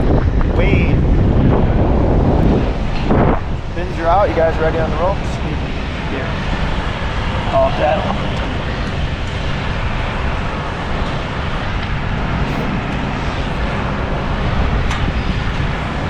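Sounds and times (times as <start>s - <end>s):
heavy diesel engine rumbling: 3.5s - 16.0s.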